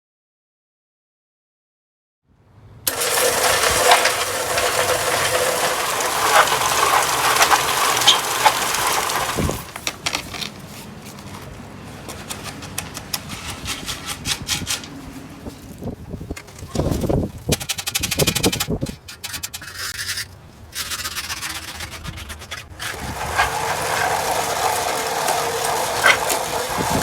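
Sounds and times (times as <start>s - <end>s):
garden hose spraying water: 2.9s - 9.8s, 22.9s - 27.0s
light scrapes: 19.0s - 27.0s.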